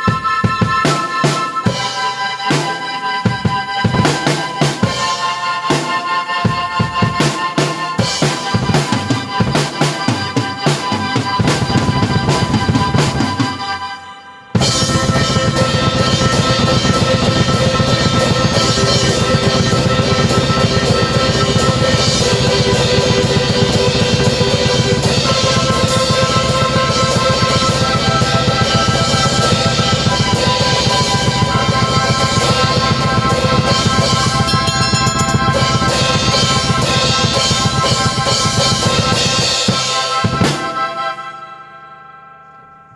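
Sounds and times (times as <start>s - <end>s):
drum kit played fast: 0.0s - 13.8s, 14.6s - 41.2s
keyboard sustained chords: 0.0s - 42.9s.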